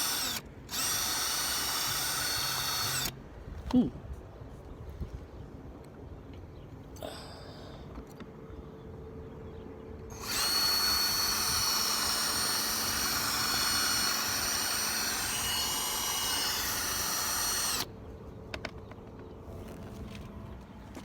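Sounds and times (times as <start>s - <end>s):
small power drill whining: 0.0s - 3.2s, 10.1s - 17.9s.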